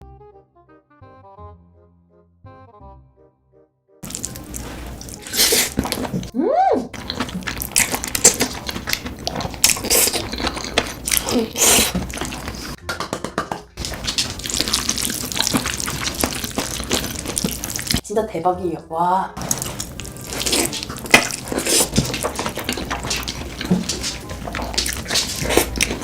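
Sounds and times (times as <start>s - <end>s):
person chewing and crunching food: 4.0s - 18.0s, 19.4s - 26.0s.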